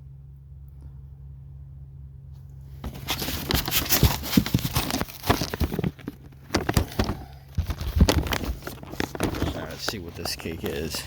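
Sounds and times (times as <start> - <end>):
cardboard boxes knocking and scraping: 2.8 - 11.0.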